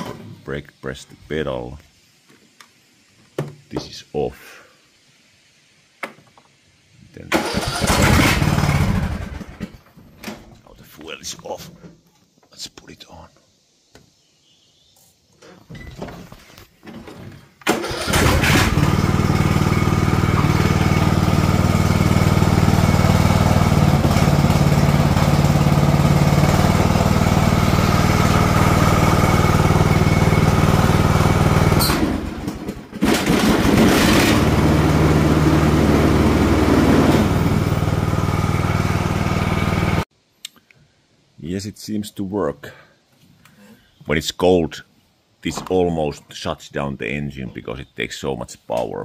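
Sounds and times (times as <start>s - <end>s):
lawn tractor engine running: 7.3s - 9.9s, 16.9s - 40.0s.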